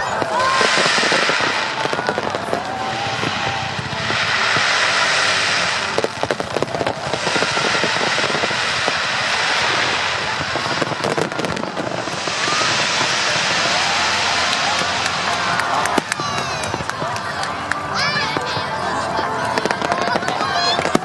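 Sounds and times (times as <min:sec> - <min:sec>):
fireworks sharp pops: 0:00.0 - 0:17.5, 0:19.6 - 0:21.0
fireworks hissing and crackling: 0:00.0 - 0:21.0.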